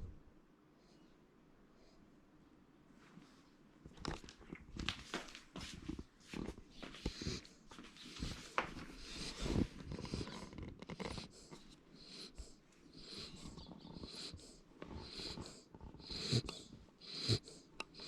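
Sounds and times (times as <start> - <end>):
small rustles and knocks: 3.0 - 11.7
puppy snuffling and breathing: 3.2 - 18.0.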